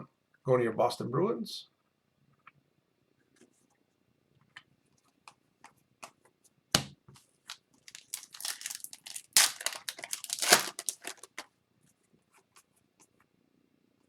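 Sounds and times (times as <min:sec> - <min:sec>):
wrapper crinkling and tearing: 0:07.5 - 0:11.5.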